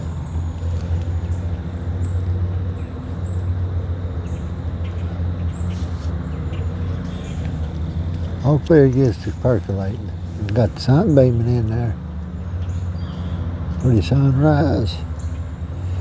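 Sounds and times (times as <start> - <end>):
low rumbling hum: 0.0 - 16.0
light hiss: 5.6 - 8.3.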